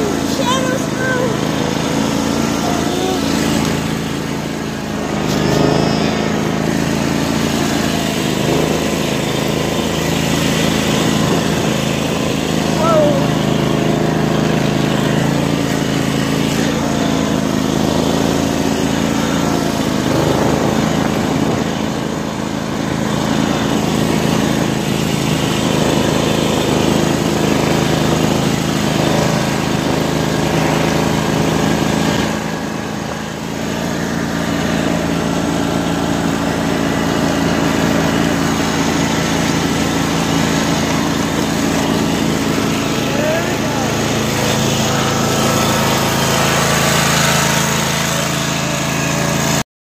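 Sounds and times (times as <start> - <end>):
riding lawn mower engine: 0.0 - 49.7.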